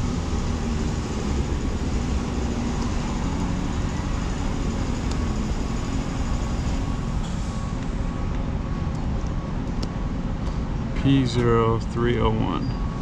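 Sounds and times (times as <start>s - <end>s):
car engine idling with misfire: 0.0s - 8.2s.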